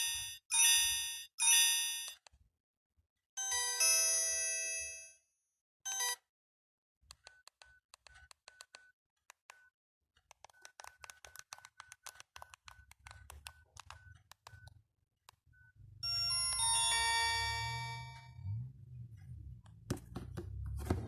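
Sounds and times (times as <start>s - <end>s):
phone keys clicking: 10.2s - 14.7s
electronic tone melody: 15.5s - 18.6s.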